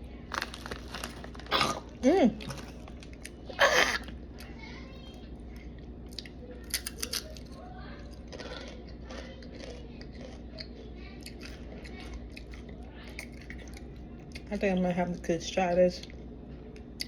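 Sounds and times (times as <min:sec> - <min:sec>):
person crunching chips: 0:00.3 - 0:04.5, 0:06.1 - 0:13.9.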